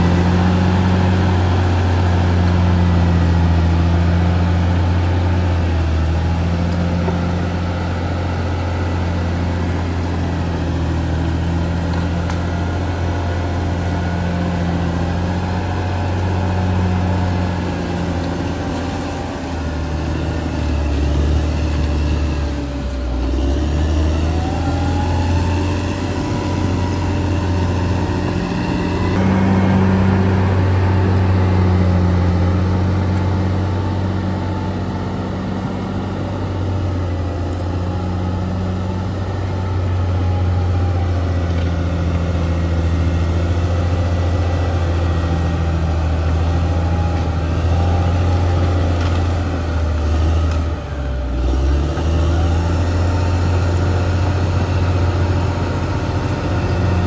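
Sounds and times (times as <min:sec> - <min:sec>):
bulldozer diesel engine running: 0:00.0 - 0:57.0
faint high whining: 0:04.8 - 0:37.1.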